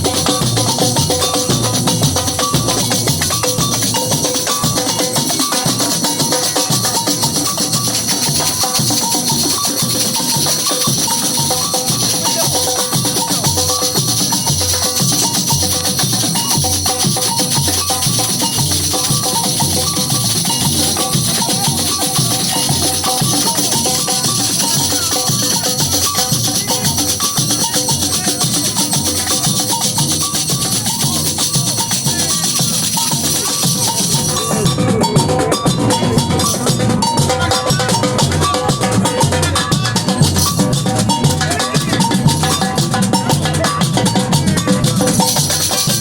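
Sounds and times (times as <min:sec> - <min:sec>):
percussion ensemble drums: 0:00.0 - 0:46.0
shakers hissing: 0:44.6 - 0:46.0.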